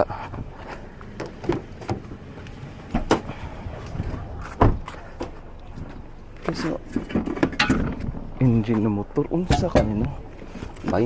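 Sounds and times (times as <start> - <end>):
knocks and clicks: 9.5 - 10.1.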